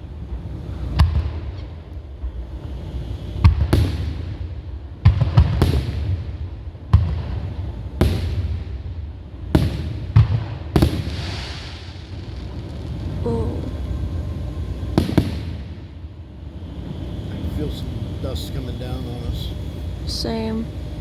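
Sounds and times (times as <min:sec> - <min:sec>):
fireworks bangs with echo: 0:03.4 - 0:14.1, 0:14.8 - 0:16.0.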